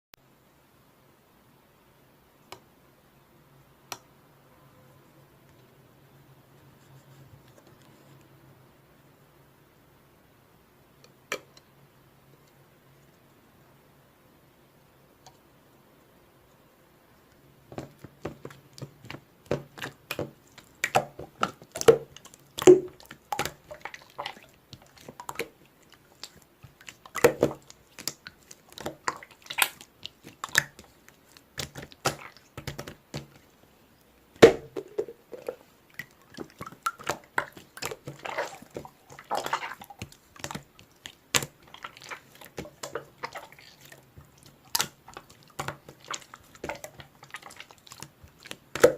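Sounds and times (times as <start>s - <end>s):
slime squelching by hand: 17.6s - 48.9s.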